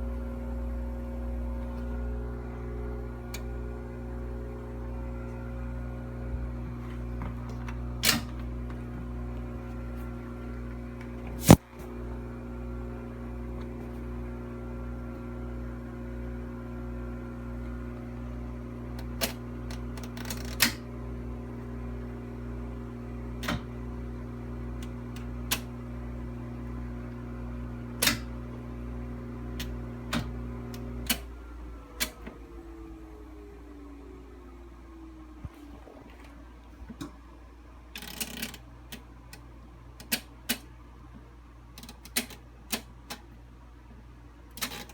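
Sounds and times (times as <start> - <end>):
motor winding down whine: 0.0 - 36.8
air conditioner drone: 0.0 - 44.9
dishwasher mechanical hum: 0.0 - 44.9
sharp click: 11.4 - 11.6.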